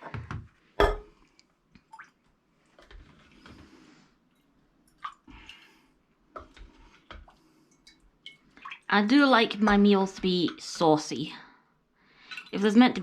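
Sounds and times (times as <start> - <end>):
soft squishing of food: 0.6 - 8.9
faint clicks of containers: 0.9 - 8.9.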